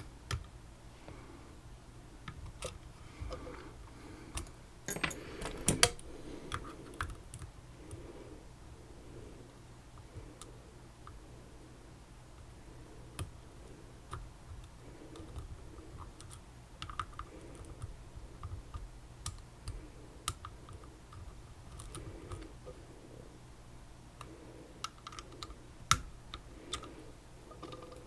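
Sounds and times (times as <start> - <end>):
low steady hum: 0.0 - 28.0
lock-picking tools clicking: 4.4 - 7.5.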